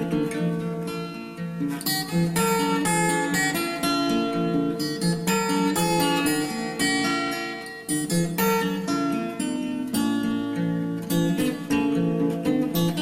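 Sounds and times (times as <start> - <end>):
acoustic guitar playing: 0.0 - 13.0.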